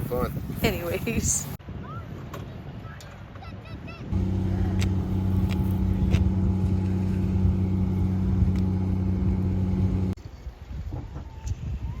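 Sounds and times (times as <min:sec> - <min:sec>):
engine humming: 0:04.1 - 0:10.2.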